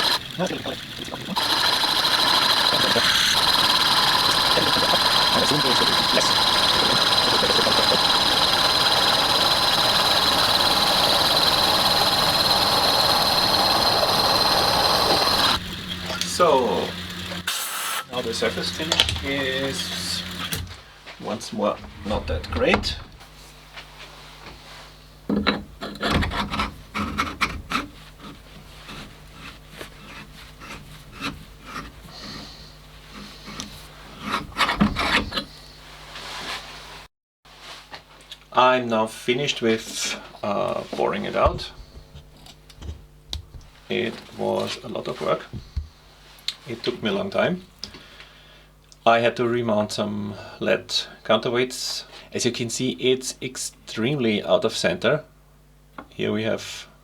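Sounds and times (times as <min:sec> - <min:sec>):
metal lathe running: 0:00.0 - 0:20.8, 0:21.7 - 0:23.2
faint machine hum: 0:00.0 - 0:37.0, 0:37.6 - 0:57.0
scraping on metal workpiece: 0:21.7 - 0:23.2.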